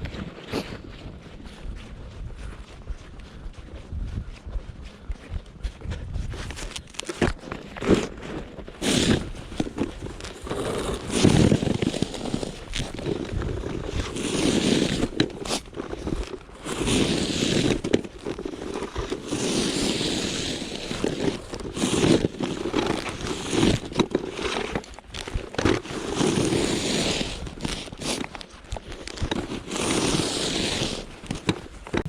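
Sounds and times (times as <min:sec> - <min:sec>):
snow shovel scraping snow: 0:06.4 - 0:32.0.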